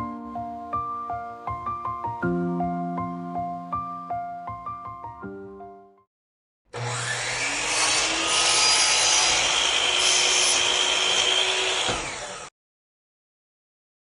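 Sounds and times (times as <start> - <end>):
band saw cutting wood: 6.7 - 12.5.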